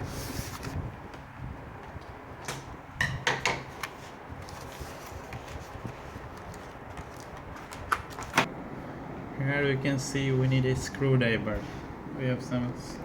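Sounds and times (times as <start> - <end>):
packaging rustling: 3.9 - 8.5.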